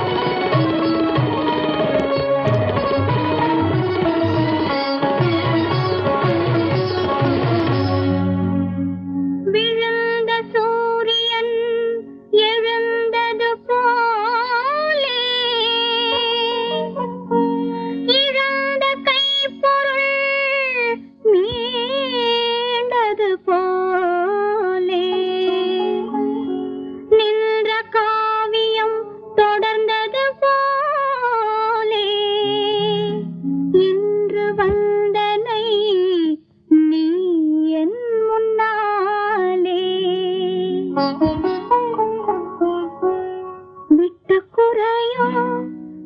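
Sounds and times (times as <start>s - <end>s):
low musical accompaniment: 0.0s - 13.9s, 15.1s - 21.8s, 23.6s - 29.6s, 39.4s - 46.0s
woman singing with vibrato: 9.5s - 26.5s, 27.1s - 45.8s.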